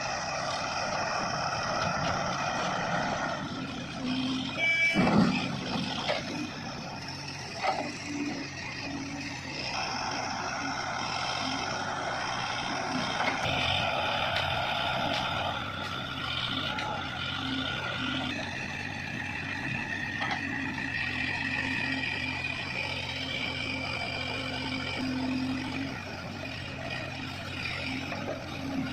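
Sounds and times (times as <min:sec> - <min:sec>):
high whining tones: 0:00.0 - 0:13.5
backhoe engine running: 0:00.0 - 0:28.9.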